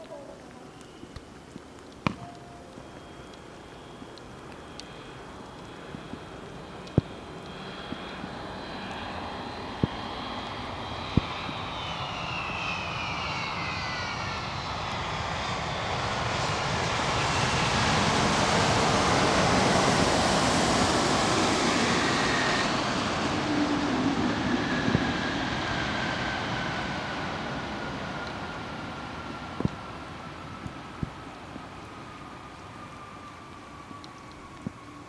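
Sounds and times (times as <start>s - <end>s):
high whine falling in pitch: 2.0s - 4.2s
jet airliner passing: 2.0s - 35.0s.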